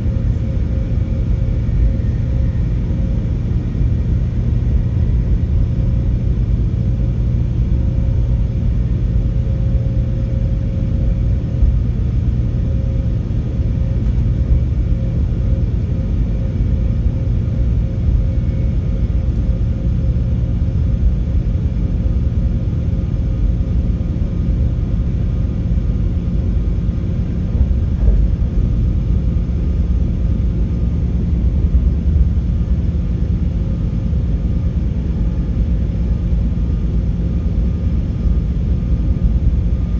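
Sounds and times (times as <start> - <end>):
diesel train engines droning: 0.0 - 39.9.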